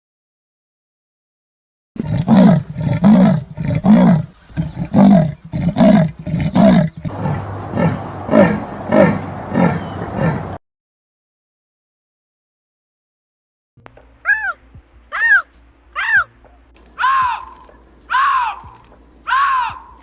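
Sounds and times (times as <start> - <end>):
big cat grunting roars: 2.0 - 10.6.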